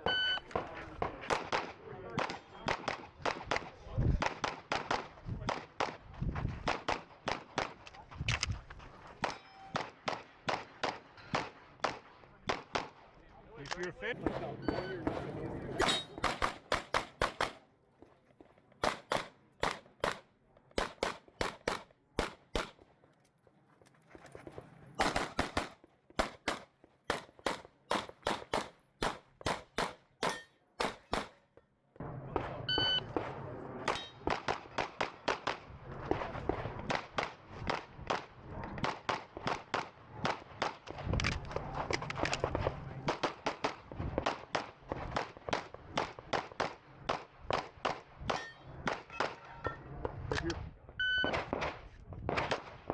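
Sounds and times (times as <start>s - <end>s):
rapid pistol shots: 15.8s - 17.7s, 18.8s - 22.8s, 25.0s - 31.4s, 34.2s - 40.9s.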